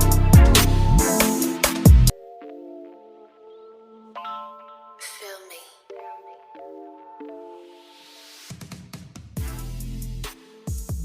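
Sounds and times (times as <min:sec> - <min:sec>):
sustained synthesizer chords: 0:00.0 - 0:04.9.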